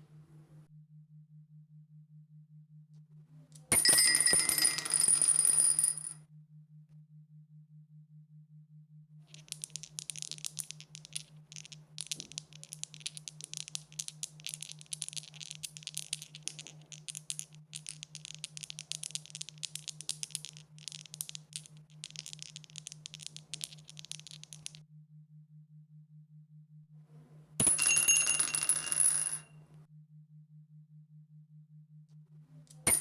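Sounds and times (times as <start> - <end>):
dice rattling: 9.3 - 24.8.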